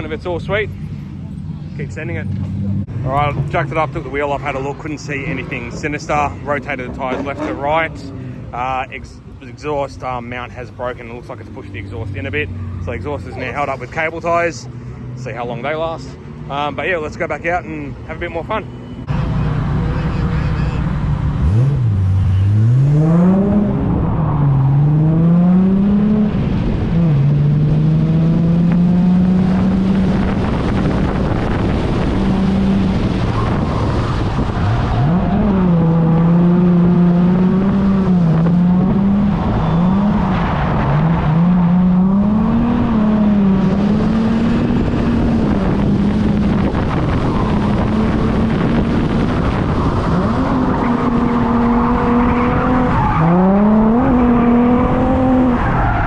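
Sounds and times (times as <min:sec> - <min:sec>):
tyre and road noise: 0:00.0 - 0:56.0
car engine revving: 0:18.1 - 0:56.0.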